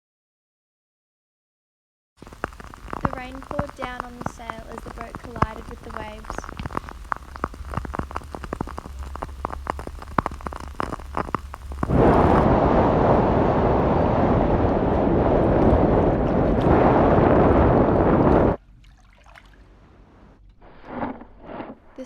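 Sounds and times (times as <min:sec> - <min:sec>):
rain pattering: 0:02.2 - 0:18.6
waves crashing: 0:11.9 - 0:18.6.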